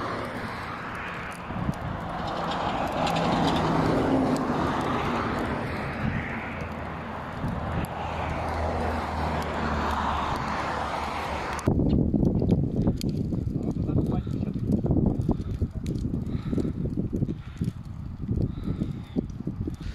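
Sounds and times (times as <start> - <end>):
engine hum: 0.0 - 13.8.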